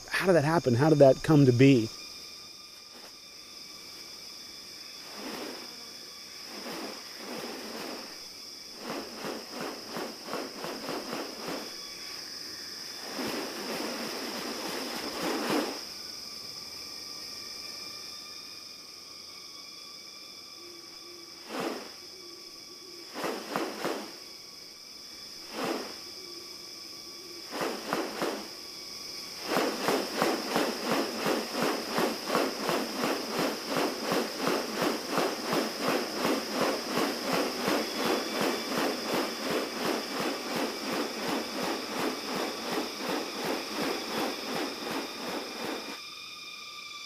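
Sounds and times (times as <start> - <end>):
high insect whine: 0.0 - 47.0
rapid pulsing clicks: 8.8 - 11.7, 29.4 - 46.0.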